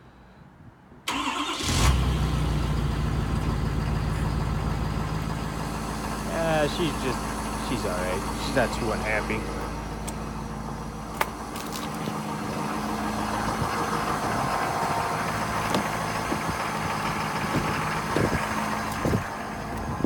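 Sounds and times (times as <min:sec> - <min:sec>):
diesel engine idling: 0:01.1 - 0:20.0.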